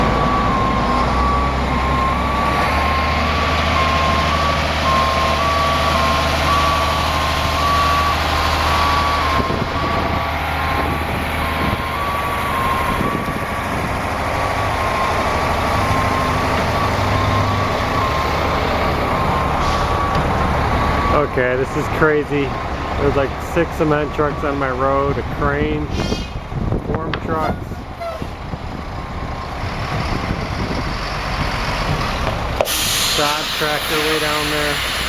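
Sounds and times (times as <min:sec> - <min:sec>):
reversing alarm beeping: 0:00.0 - 0:26.2
diesel engine running: 0:00.0 - 0:35.0.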